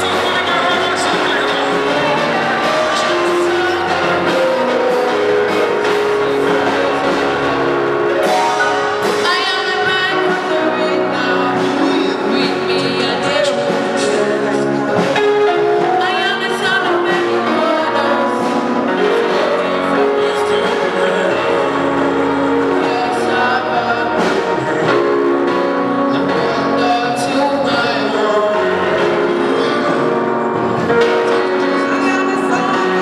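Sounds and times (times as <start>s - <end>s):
choir singing gospel music: 0.0s - 33.0s
instrumental accompaniment: 0.0s - 33.0s.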